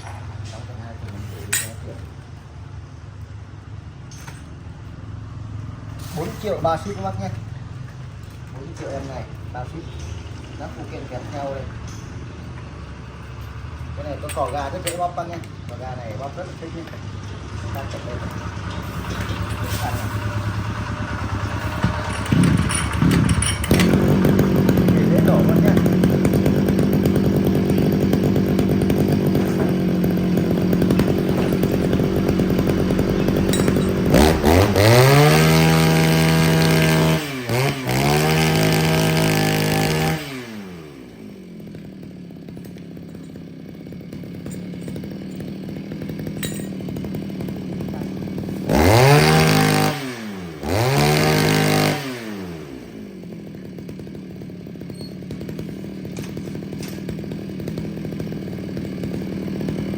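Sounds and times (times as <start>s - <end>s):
brush cutter engine revving: 12.9s - 59.9s.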